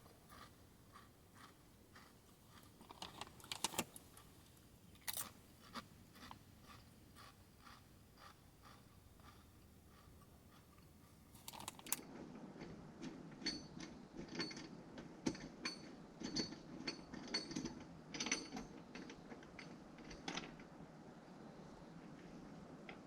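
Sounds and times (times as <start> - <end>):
metallic clicks and clinks: 11.3 - 12.0.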